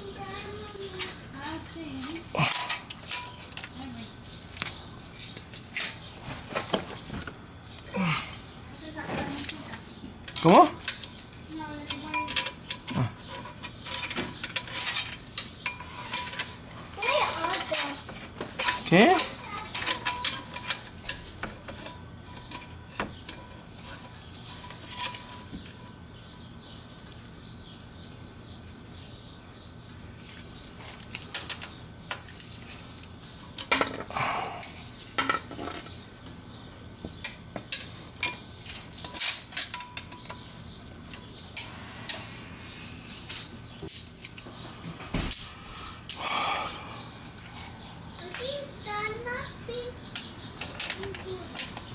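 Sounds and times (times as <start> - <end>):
steady low hum: 0.0 - 51.9
metal tools clinking: 0.3 - 6.1, 10.3 - 26.0, 36.9 - 44.4, 50.1 - 51.9.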